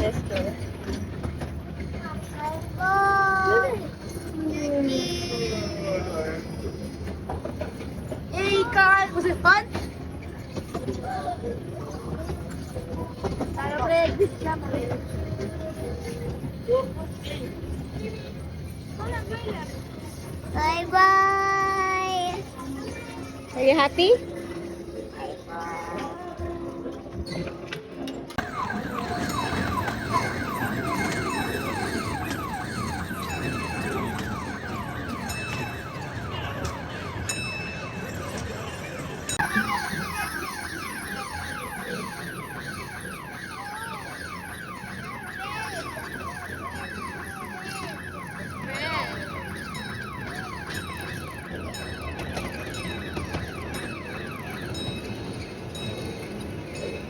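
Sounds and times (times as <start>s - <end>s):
steady background din: 0.0s - 57.0s
electronic alarm tone warbling: 28.4s - 55.4s.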